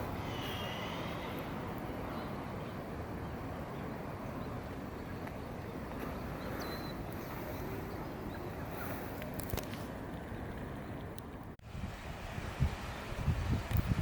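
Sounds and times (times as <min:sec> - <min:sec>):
outdoor background noise: 0:00.0 - 0:14.0.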